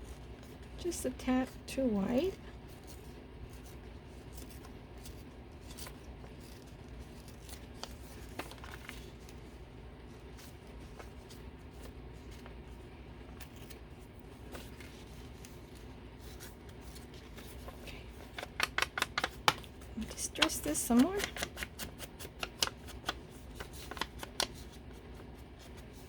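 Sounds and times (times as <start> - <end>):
low room hum: 0.0 - 26.0
paper handling: 2.1 - 26.0
scissors cutting paper: 18.2 - 24.7.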